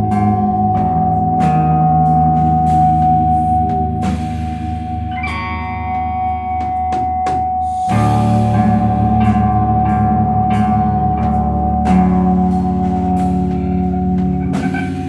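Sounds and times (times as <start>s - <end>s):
drumming: 0.0s - 15.0s
held guitar note ringing: 0.0s - 15.0s
rock band playing: 0.0s - 15.0s.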